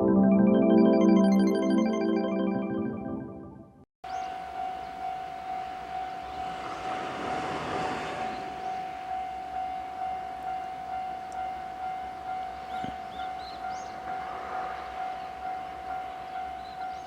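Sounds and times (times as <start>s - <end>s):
level crossing warning alarm: 4.2s - 17.0s.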